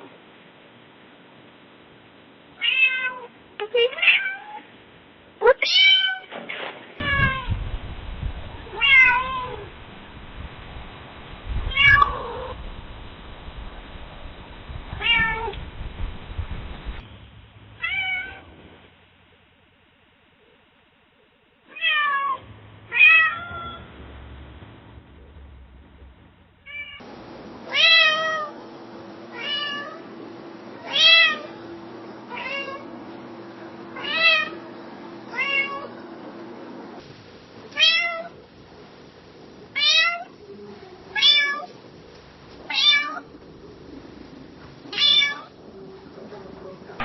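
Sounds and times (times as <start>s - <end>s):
steady low hum: 7.0s - 21.6s, 22.4s - 47.0s
cats meowing: 8.7s - 9.6s, 11.7s - 12.6s, 44.9s - 45.5s.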